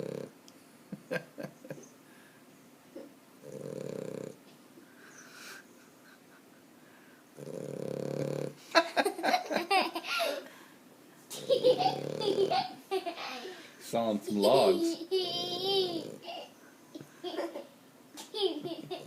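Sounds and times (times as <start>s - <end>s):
dog snoring: 0.0s - 0.4s, 3.4s - 4.4s, 7.4s - 8.6s, 11.7s - 12.7s, 15.4s - 16.3s
human laughter: 1.0s - 1.9s.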